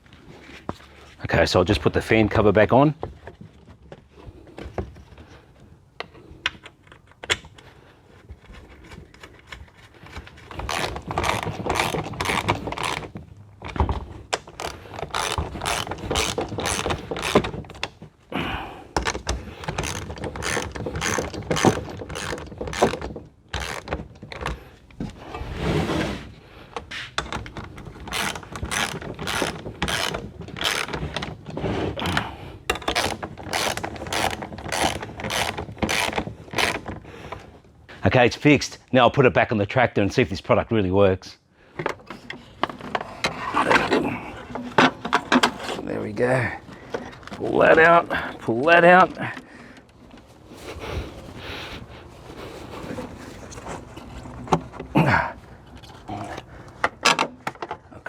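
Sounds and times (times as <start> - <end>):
ratchet wrench clicking: 14.6 - 17.4, 19.7 - 23.0.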